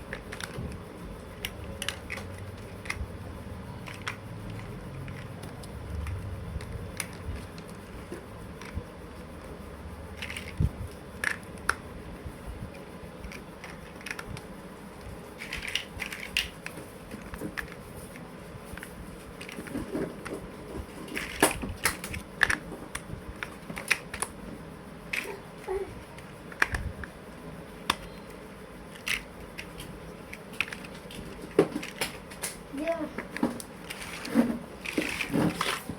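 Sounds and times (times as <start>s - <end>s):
plastic toy blocks clicking: 0.0s - 3.1s, 3.8s - 8.8s, 10.2s - 11.8s, 13.2s - 14.5s, 15.4s - 17.8s, 19.4s - 20.4s, 21.1s - 24.4s, 25.1s - 27.1s, 28.9s - 35.8s.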